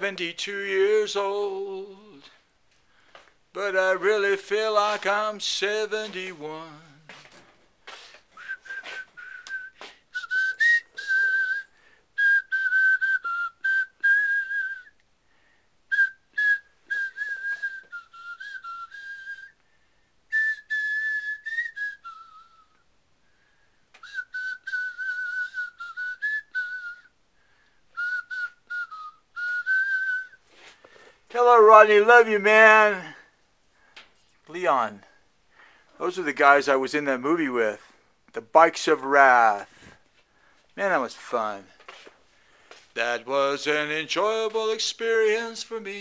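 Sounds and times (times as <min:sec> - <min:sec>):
person whistling a tune: 0:08.4 - 0:15.0, 0:15.9 - 0:19.6, 0:20.3 - 0:22.8, 0:24.0 - 0:27.2, 0:27.9 - 0:31.0.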